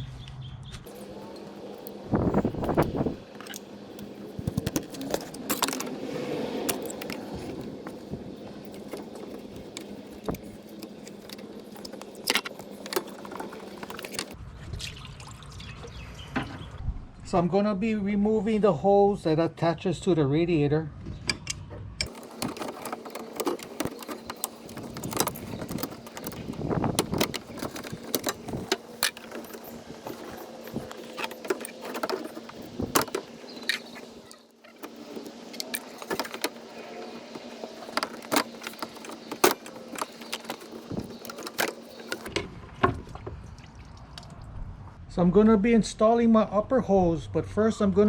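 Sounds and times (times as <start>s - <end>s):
steady low hum: 0.8s - 14.4s.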